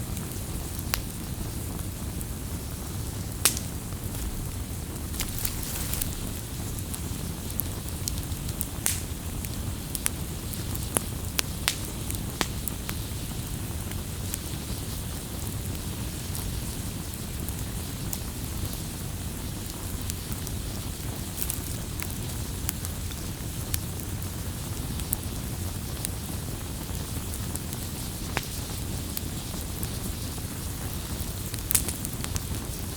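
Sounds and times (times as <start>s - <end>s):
campfire flames rumbling: 0.1s - 32.9s
wood crackling and popping: 2.2s - 14.8s, 21.2s - 22.8s, 27.0s - 32.9s.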